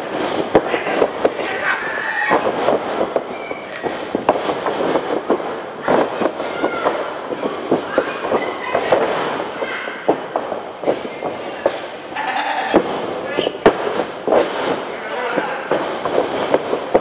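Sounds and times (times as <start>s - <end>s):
sharp cracks and slaps: 0.0s - 12.0s, 12.7s - 17.0s
crowd shouting and whistling: 3.3s - 3.8s.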